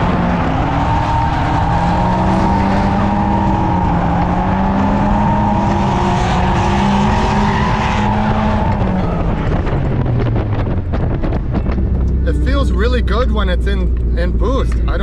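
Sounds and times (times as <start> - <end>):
tyres squealing and skidding: 0.0 - 9.6.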